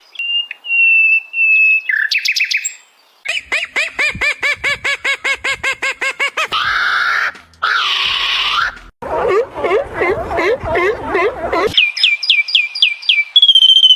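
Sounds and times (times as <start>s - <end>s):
bird chirps: 0.0s - 4.7s, 11.7s - 13.9s
harsh bird squawks: 3.3s - 8.9s
high bird whistles: 11.7s - 13.9s.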